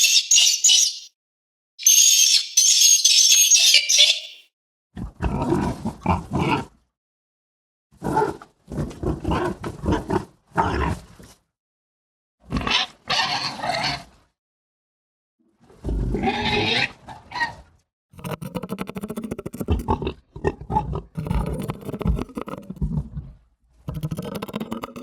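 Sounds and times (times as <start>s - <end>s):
rapid guttural pulses: 18.2s - 20.0s, 21.2s - 23.0s, 23.9s - 25.0s
creature growls: 18.2s - 23.0s, 23.9s - 25.0s.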